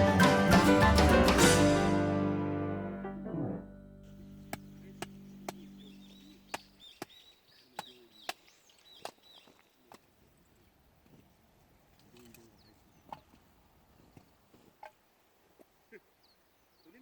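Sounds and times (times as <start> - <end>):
background music: 0.0 - 5.7
faint bird chirps: 4.4 - 9.9.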